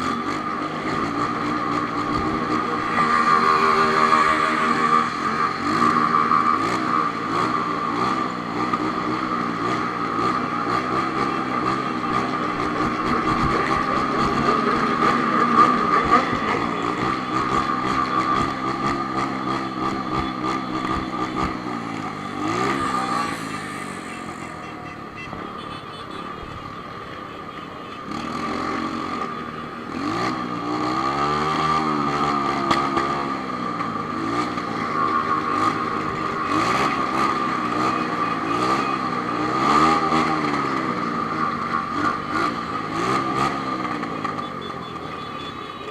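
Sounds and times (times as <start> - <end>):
motorcycle engine running: 0.0 - 26.8.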